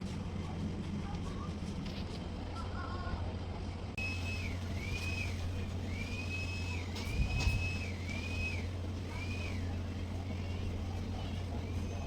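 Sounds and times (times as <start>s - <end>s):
buffing motor humming: 4.0s - 12.0s.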